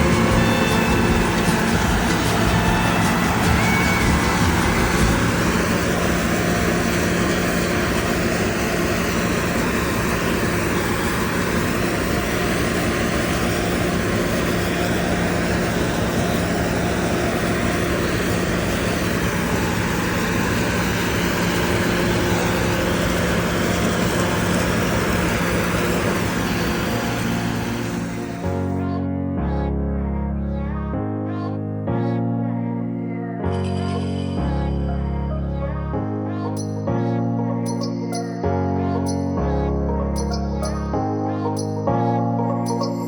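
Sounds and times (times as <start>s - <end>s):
combine harvester running: 0.0s - 28.8s.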